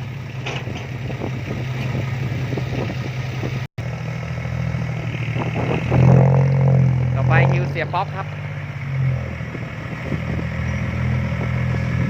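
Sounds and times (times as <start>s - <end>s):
diesel engine droning: 0.0s - 12.0s
light clatter: 0.3s - 2.1s.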